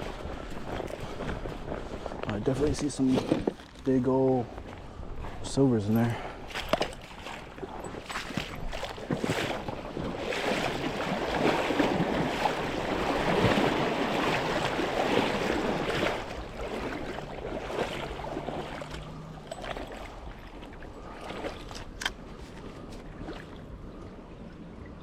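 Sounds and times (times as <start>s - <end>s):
creek water rushing: 4.1s - 23.8s.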